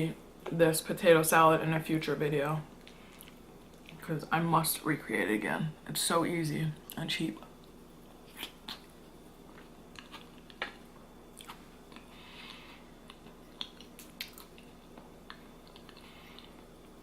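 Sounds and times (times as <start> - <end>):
person chewing food: 2.8 - 4.0, 7.6 - 17.0
mouth clicks and smacks: 8.3 - 8.9, 11.4 - 16.6.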